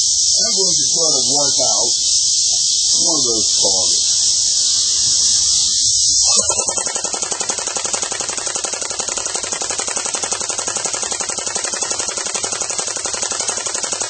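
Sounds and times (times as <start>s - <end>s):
airsoft gun full-auto burst: 6.2s - 14.0s.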